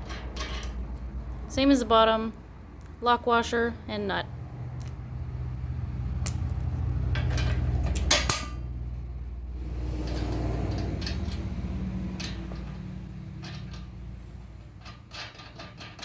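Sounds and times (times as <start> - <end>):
steel hardware clinking: 0.0 - 1.0, 6.2 - 8.7, 10.0 - 16.0.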